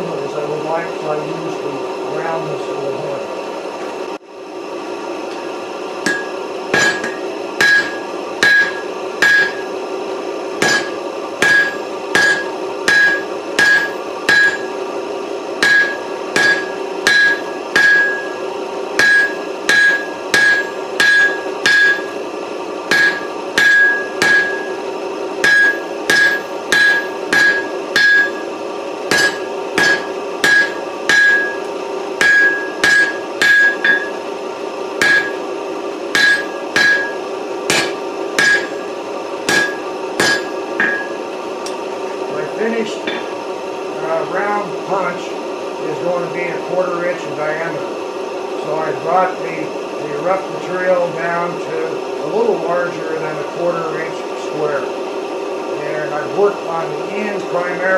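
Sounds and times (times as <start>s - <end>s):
steady hum: 0.0s - 57.9s
hammer striking steel on anvil: 6.0s - 9.8s, 10.6s - 14.8s, 15.6s - 18.4s, 19.0s - 22.2s, 22.9s - 28.5s, 29.1s - 34.2s, 35.0s - 35.5s, 36.1s - 41.8s, 43.0s - 43.4s.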